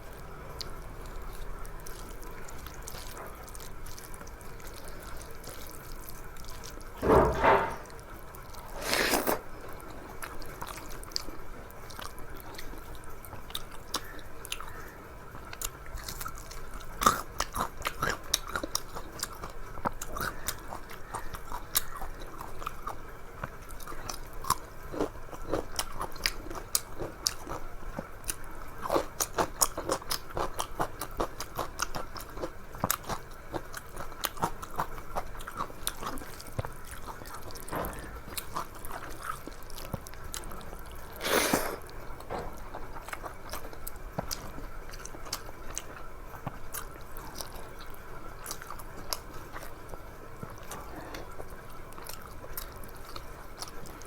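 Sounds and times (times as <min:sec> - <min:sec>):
person chewing food: 0:00.1 - 0:54.0.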